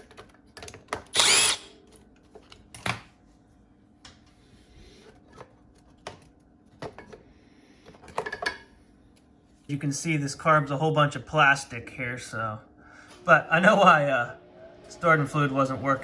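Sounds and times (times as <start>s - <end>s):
power drill whirring: 1.1s - 1.7s.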